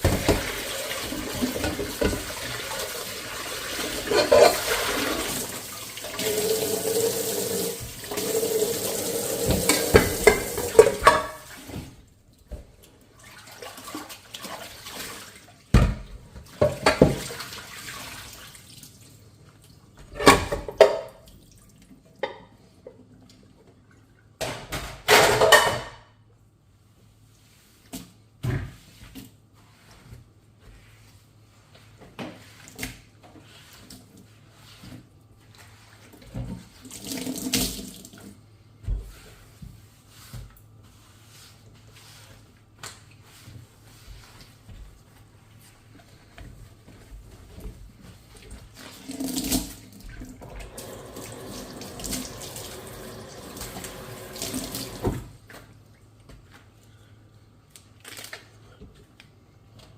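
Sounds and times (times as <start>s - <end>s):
kitchen tap running: 0.0s - 11.6s, 48.9s - 55.3s
dishes clattering: 4.0s - 4.9s, 9.5s - 11.5s, 25.0s - 26.0s.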